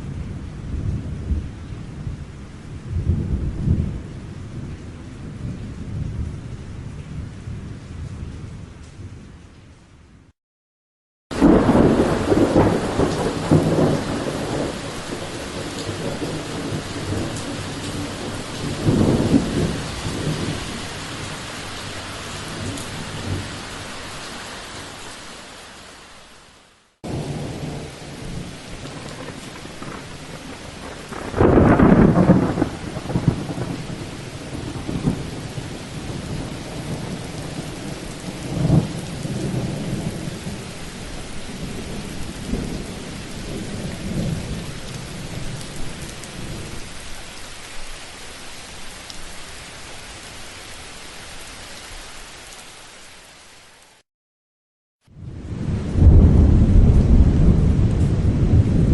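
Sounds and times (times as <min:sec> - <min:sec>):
steady rain: 0:00.0 - 0:10.2, 0:11.3 - 0:54.0, 0:55.1 - 0:58.9
thunder rumbling: 0:11.3 - 0:23.8, 0:27.1 - 0:46.8, 0:55.2 - 0:58.9.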